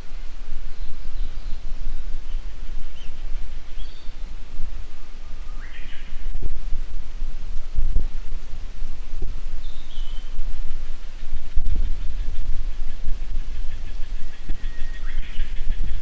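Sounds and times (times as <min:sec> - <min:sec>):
warbler singing: 0:00.0 - 0:06.6, 0:09.2 - 0:16.0
wind buffeting microphone: 0:00.0 - 0:16.0
small bird chirps: 0:00.7 - 0:04.2, 0:05.0 - 0:06.3, 0:09.6 - 0:10.4, 0:11.0 - 0:16.0.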